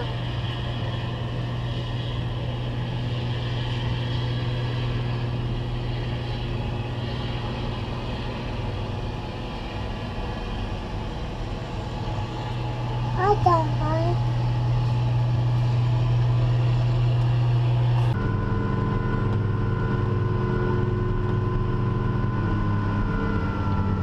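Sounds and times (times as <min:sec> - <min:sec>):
combine harvester engine drone: 0:00.0 - 0:24.0.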